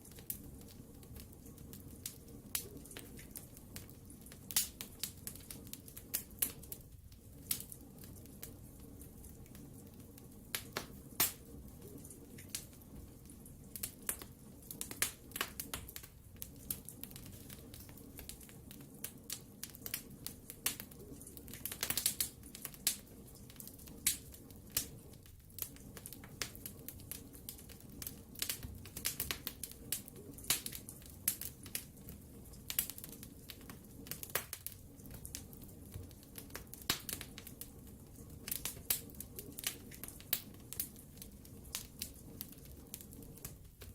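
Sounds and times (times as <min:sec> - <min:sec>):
low rush of flame: 0:00.0 - 0:43.9
wood fire crackling and popping: 0:00.0 - 0:43.9.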